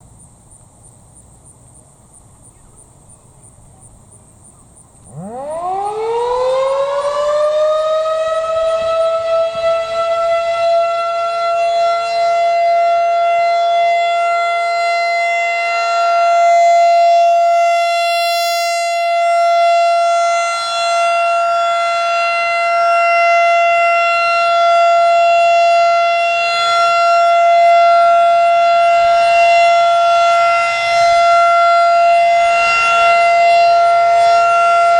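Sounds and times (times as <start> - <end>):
warning siren steady tone: 4.4 - 34.9.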